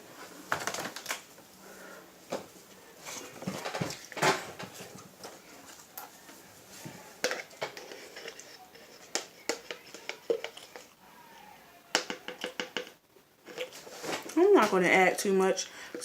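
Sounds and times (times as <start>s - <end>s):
spoon and cup clicking: 12.0s - 13.0s.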